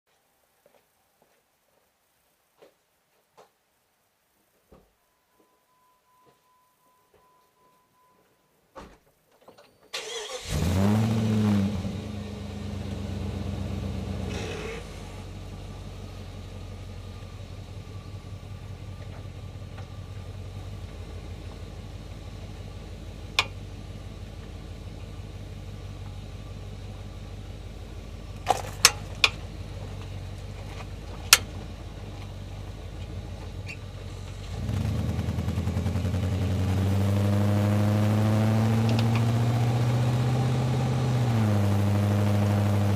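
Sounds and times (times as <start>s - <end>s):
engine starter cranking: 9.9s - 11.2s
engine revving: 10.0s - 15.8s, 30.4s - 42.9s
car engine idling: 10.0s - 42.9s.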